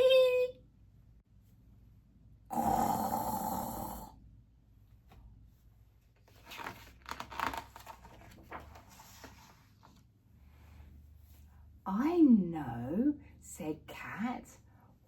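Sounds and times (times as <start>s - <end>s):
woman imitating a snore: 2.5s - 4.2s.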